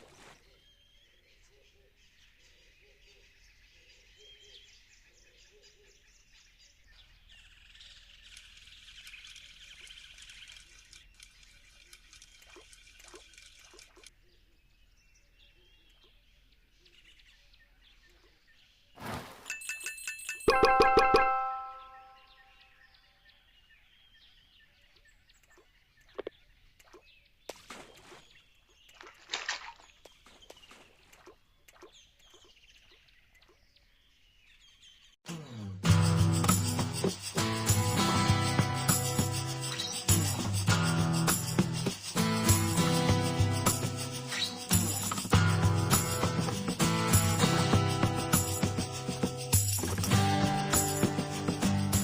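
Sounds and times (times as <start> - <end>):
bird chirps: 0.0 - 35.2, 36.2 - 46.3
rustling bursts: 19.0 - 19.5
high bird trill: 19.4 - 22.6, 36.0 - 52.0.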